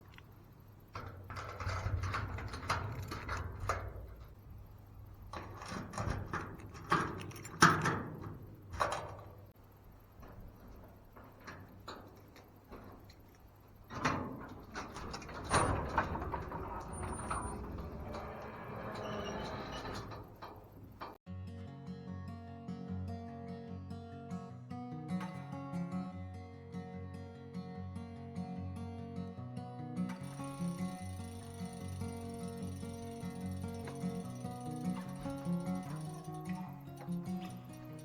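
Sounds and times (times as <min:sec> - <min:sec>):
mechanical clicks and rattles: 0:00.9 - 0:09.5, 0:30.1 - 0:38.0.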